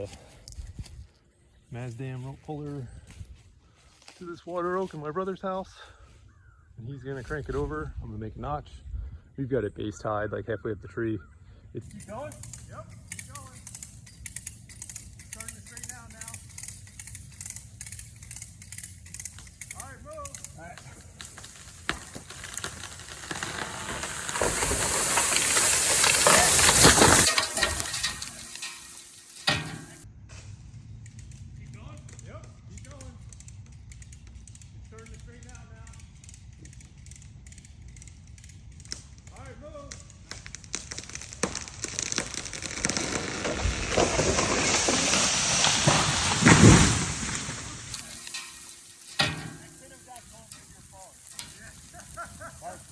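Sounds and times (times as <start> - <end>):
tree falling through branches: 14.8 - 30.0, 40.2 - 52.9.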